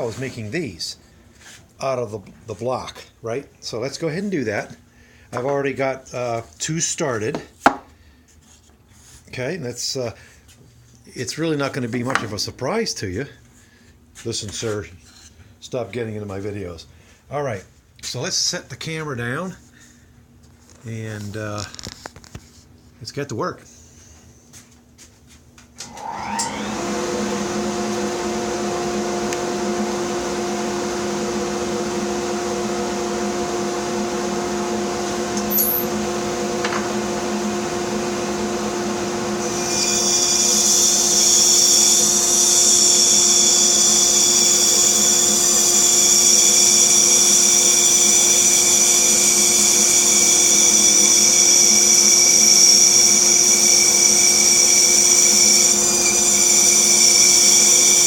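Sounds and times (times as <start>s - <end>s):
bandsaw motor humming: 25.8s - 58.0s
saw blade cutting wood whine: 25.8s - 58.0s.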